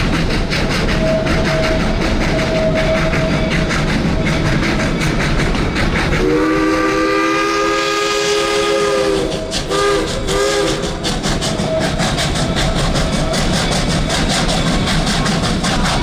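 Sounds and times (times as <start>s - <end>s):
train rumble and beat: 0.0s - 16.0s
steam locomotive chime whistle: 0.8s - 4.8s, 6.2s - 14.2s.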